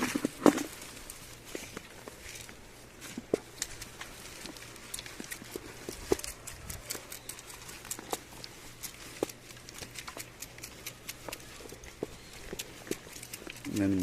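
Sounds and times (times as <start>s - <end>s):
corn kernels ticking: 3.3s - 14.0s.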